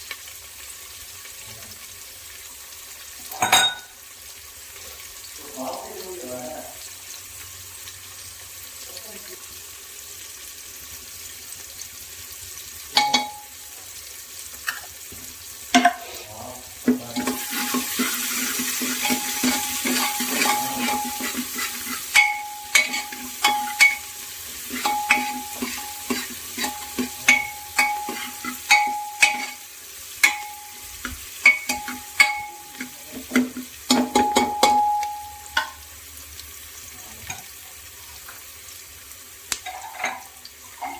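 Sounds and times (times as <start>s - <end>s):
food sizzling in hot oil: 0.0s - 40.9s
metal spoon clinking in pot: 13.0s - 13.5s, 19.0s - 29.6s, 30.2s - 33.0s, 33.9s - 35.8s.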